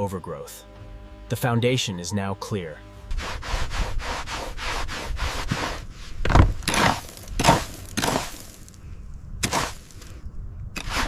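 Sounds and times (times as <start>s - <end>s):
scraping strokes on wood: 3.0s - 8.8s, 9.4s - 10.1s, 10.8s - 11.0s.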